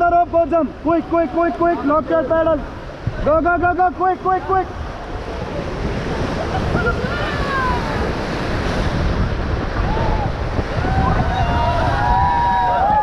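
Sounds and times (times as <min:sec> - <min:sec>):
whitewater rushing: 0:00.0 - 0:13.0
wind buffeting microphone: 0:00.0 - 0:13.0.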